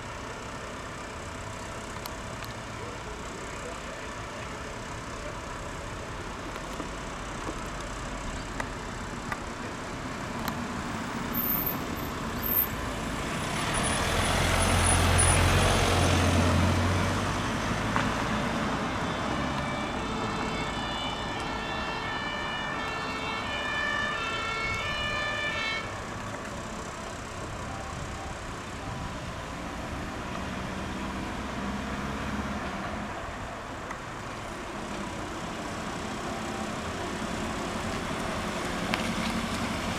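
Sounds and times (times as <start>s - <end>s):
two-tone siren wail: 18.2s - 26.2s.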